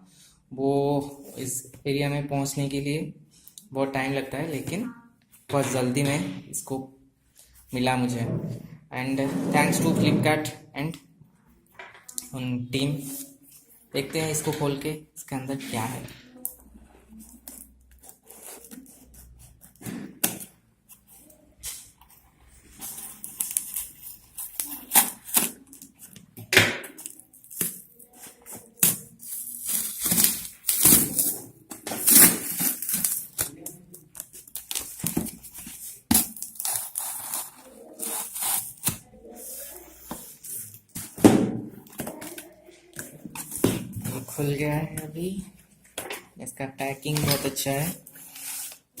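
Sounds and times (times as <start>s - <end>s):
cardboard and plastic tearing: 22.7s - 26.2s, 26.8s - 41.2s.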